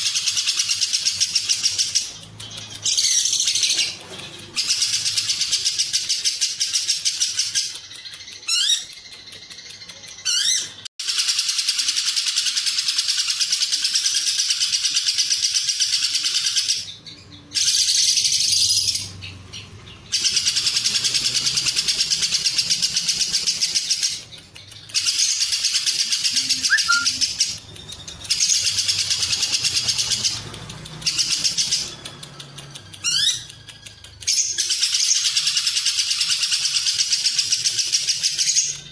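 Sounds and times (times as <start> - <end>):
bird chattering trill: 0.0 - 38.9
rising whistle-like sweeps: 26.6 - 27.2.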